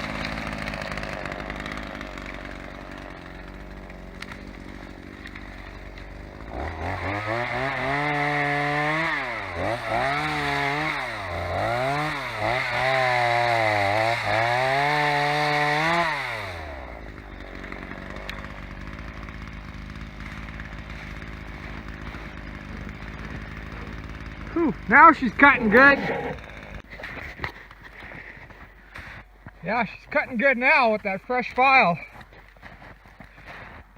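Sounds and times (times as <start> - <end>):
chainsaw cutting wood: 0.0 - 33.9.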